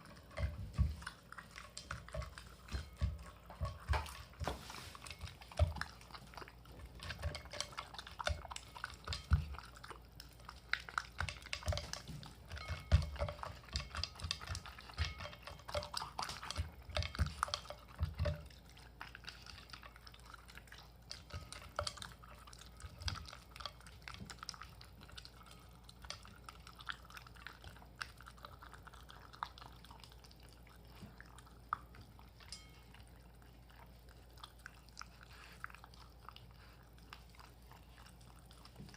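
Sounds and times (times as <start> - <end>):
dog chewing and licking: 0.0 - 38.9.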